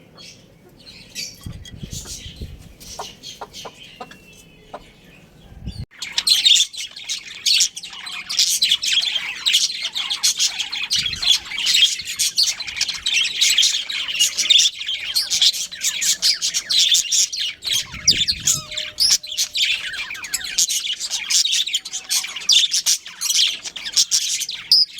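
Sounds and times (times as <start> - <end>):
cage birds chirping: 0.0 - 24.9.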